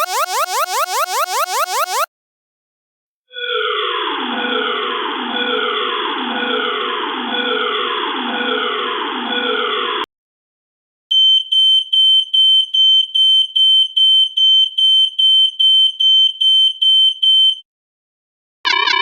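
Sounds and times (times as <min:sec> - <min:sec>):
falling sweep alarm: 0:00.0 - 0:02.1
rapid high-pitched alarm beeping: 0:00.0 - 0:02.1.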